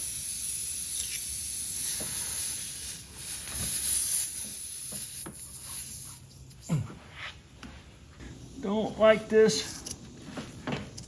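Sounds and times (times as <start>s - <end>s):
air hissing out of tyre: 0.0s - 6.2s.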